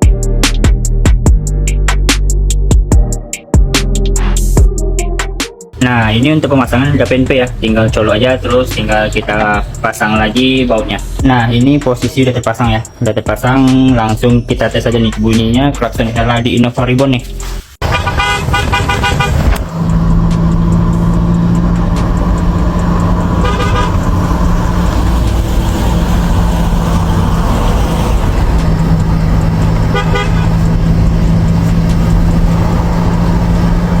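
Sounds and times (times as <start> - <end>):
car horn toots: 17.8 - 24.8, 29.5 - 31.3
steady low drone: 19.6 - 34.0.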